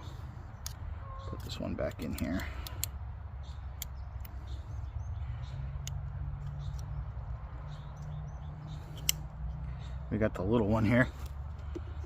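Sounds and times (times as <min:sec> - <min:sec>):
multitool clicks: 0:03.6 - 0:04.4, 0:08.9 - 0:09.3.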